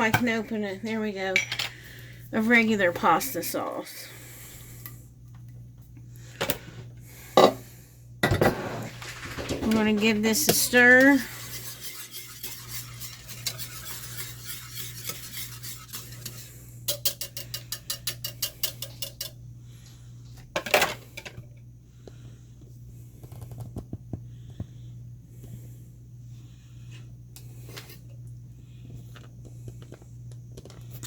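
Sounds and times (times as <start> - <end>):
utensil scraping a pot: 0.0 - 4.1, 8.5 - 19.4
utensil clinking against a pot: 9.7 - 19.4.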